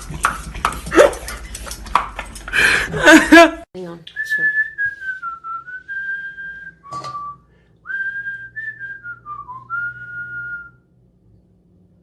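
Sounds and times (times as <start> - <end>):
person whistling a tune: 4.2 - 10.8.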